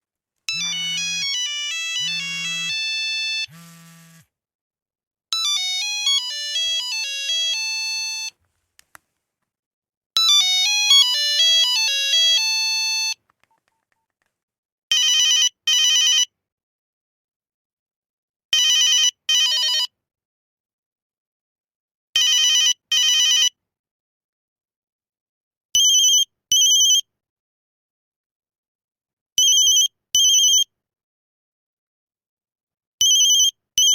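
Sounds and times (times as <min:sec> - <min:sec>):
electronic phone ringtones: 0:00.5 - 0:04.0, 0:05.4 - 0:08.3, 0:10.3 - 0:13.2, 0:25.8 - 0:27.0, 0:29.4 - 0:30.7, 0:33.0 - 0:33.9.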